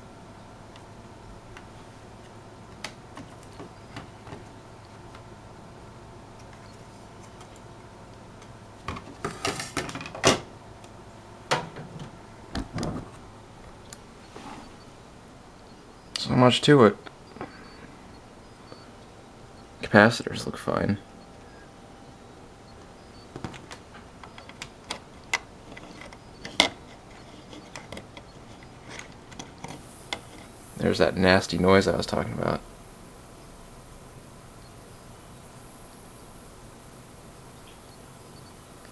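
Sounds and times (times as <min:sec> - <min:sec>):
steady low background: 0:29.8 - 0:38.9.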